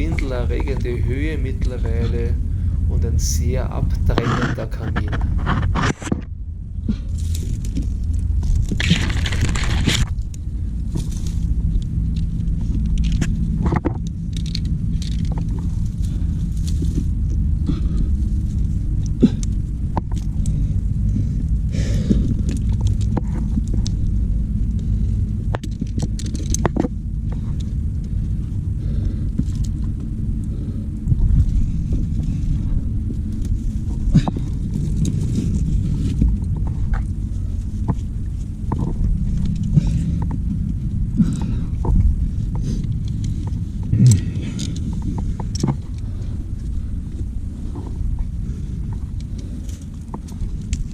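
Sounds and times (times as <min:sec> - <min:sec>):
steady low rumble: 0:00.0 - 0:50.9
climbing gear clicking on rock: 0:25.6 - 0:30.0, 0:41.2 - 0:50.9.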